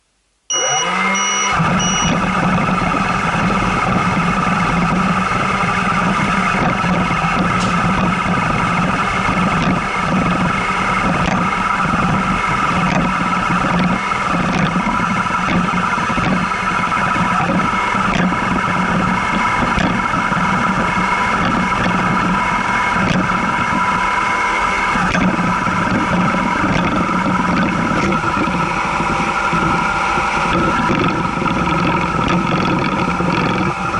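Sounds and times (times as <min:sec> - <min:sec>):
high beeps: 0:00.5 - 0:02.2
robot vacuum whine and hum: 0:00.5 - 0:33.9.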